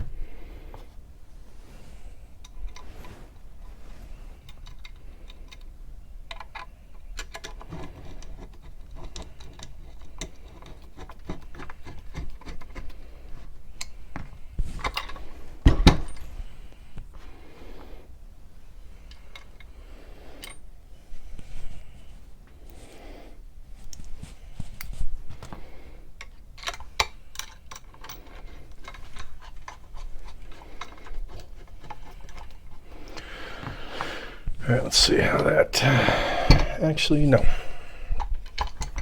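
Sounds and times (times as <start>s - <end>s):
metal hardware clinking: 36.4s - 37.4s.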